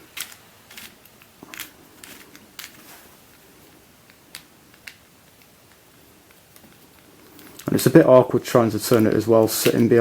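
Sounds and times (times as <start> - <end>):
plastic puzzle clicking: 0.2 - 2.8, 4.1 - 6.8.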